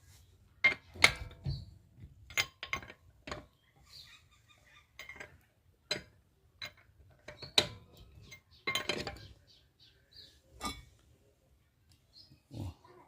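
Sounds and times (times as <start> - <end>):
metal clanks of wheel spanner: 0.6 - 3.5, 5.0 - 9.4.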